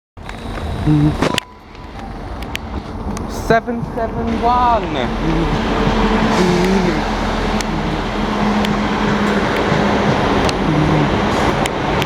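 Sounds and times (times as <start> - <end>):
diesel train engine drone: 0.2 - 12.0
loud rushing noise: 2.7 - 12.0.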